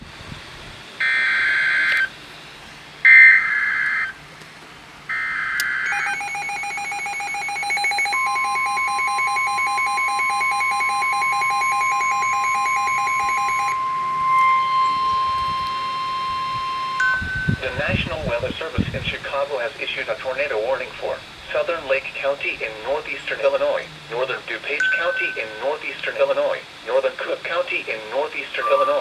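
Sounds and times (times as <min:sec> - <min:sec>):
rapid alarm beeping: 0:01.0 - 0:02.1, 0:05.1 - 0:19.7, 0:28.6 - 0:29.0
steady warning tone: 0:01.0 - 0:04.2, 0:05.1 - 0:29.0
screechy digital data bursts: 0:05.8 - 0:18.5.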